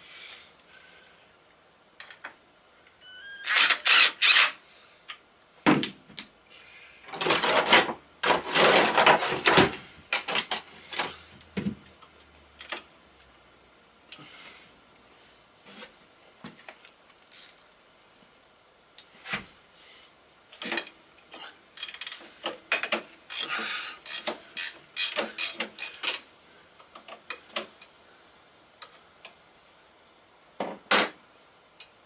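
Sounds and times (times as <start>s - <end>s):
socket ratchet clicking: 21.8s - 26.2s.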